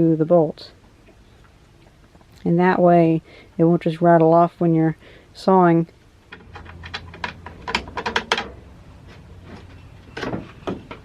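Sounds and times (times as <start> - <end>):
small metallic clicks and rattles: 6.3 - 8.6.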